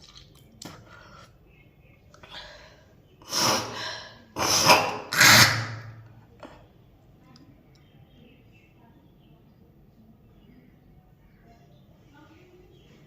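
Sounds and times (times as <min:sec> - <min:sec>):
woman coughing up phlegm: 0:04.4 - 0:06.0.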